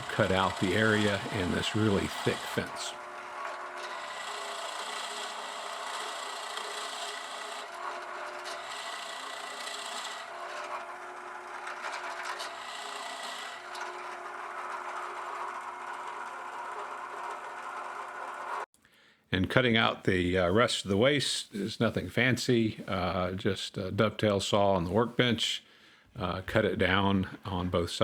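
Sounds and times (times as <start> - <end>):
faint motor hum: 0.0 - 18.6
drill boring into wood: 0.0 - 18.7.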